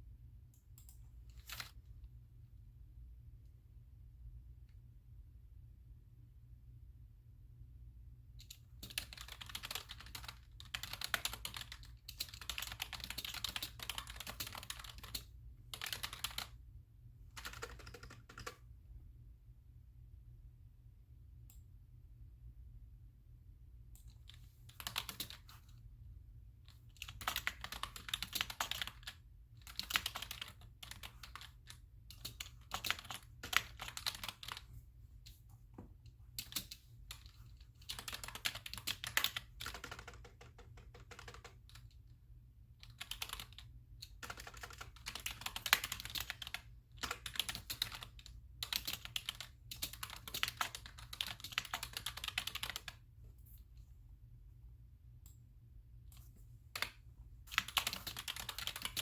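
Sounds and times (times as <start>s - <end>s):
typing on a computer keyboard: 0.6s - 1.8s, 8.4s - 16.6s, 17.3s - 18.7s, 24.0s - 25.8s, 26.7s - 34.7s, 36.3s - 42.1s, 42.8s - 53.0s, 56.2s - 59.0s.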